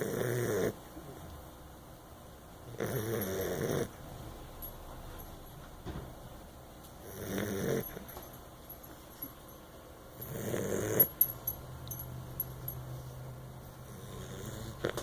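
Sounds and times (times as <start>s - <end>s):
dog snoring: 0.0s - 0.8s, 2.7s - 4.0s, 7.0s - 8.2s, 10.2s - 11.3s, 13.8s - 15.0s.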